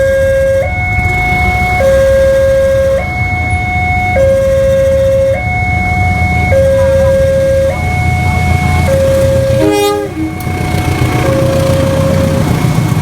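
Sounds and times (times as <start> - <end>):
low rumble of engines: 0.0 - 13.0
two-tone crossing warning siren: 0.0 - 13.0
short horn honk: 9.5 - 10.5.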